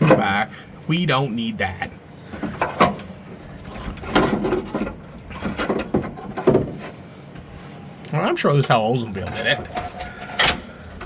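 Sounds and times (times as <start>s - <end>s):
tools knocking and clunking: 0.0s - 0.4s, 2.3s - 7.5s, 9.1s - 11.0s.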